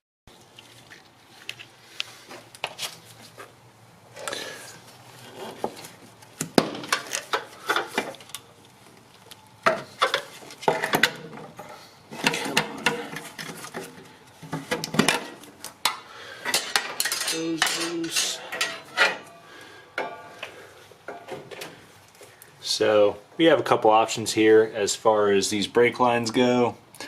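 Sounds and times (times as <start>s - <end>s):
metal tools clinking and clattering: 16.4s - 19.4s.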